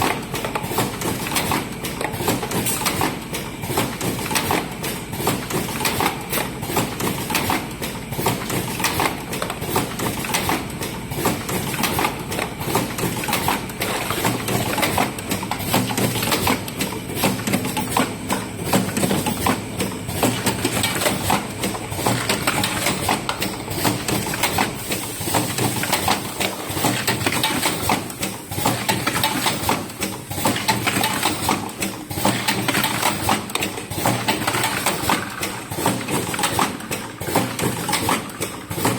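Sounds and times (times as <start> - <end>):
cartoning machine clattering: 0.0 - 38.9.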